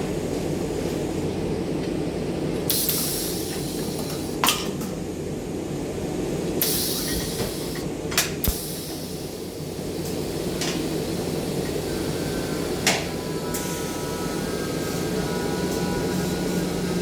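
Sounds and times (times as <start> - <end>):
low shop hum: 0.0 - 17.0
welding arc hiss: 2.7 - 4.4, 6.6 - 17.0.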